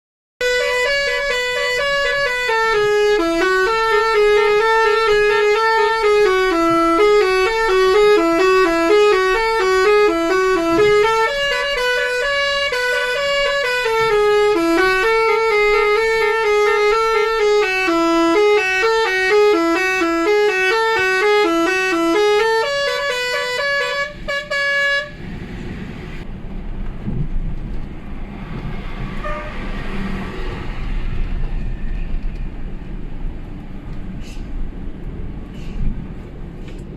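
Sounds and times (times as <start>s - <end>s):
multi-tone bus horn melody: 0.4s - 25.4s, 29.2s - 30.7s
bus and road rumble: 0.4s - 36.9s.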